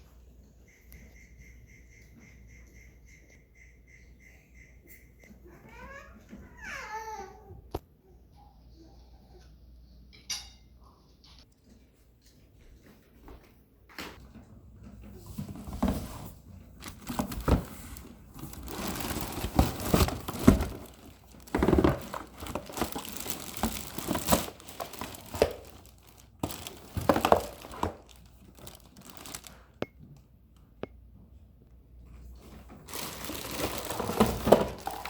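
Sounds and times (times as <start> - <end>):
packaging crinkling and tearing: 16.8 - 29.8, 32.8 - 35.0.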